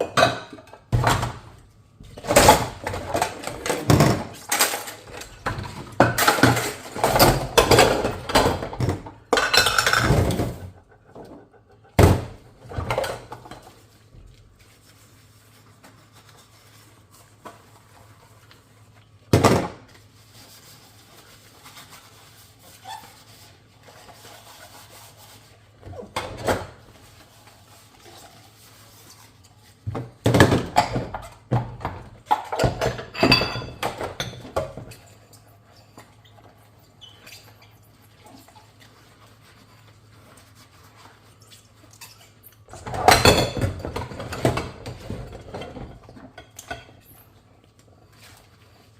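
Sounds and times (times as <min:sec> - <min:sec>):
dishes and cutlery clattering: 0:02.2 - 0:11.2, 0:30.3 - 0:35.0, 0:42.1 - 0:47.1.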